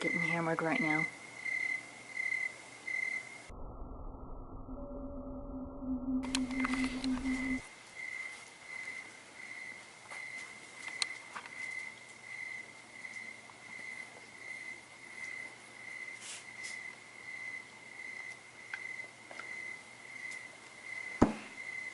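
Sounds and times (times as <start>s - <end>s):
cricket chirping: 0.0s - 3.5s, 4.7s - 21.9s
low hum: 3.5s - 7.7s.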